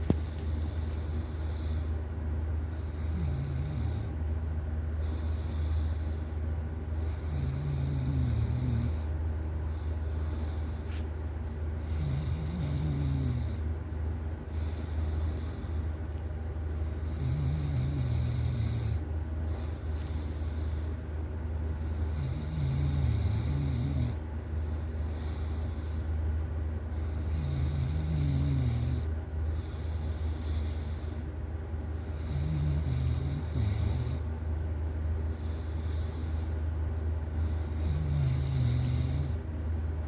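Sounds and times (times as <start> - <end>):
steady low hum: 0.0 - 40.0
person snoring: 3.0 - 4.1, 7.2 - 9.1, 11.9 - 13.6, 17.1 - 19.0, 22.1 - 24.2, 27.3 - 29.1, 32.2 - 34.2, 37.7 - 39.4.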